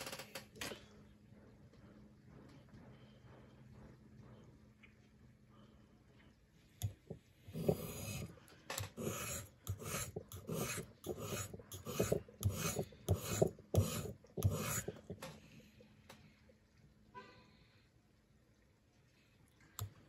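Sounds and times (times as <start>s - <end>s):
knife scraping on sharpening stone: 7.5s - 8.3s, 9.0s - 15.0s.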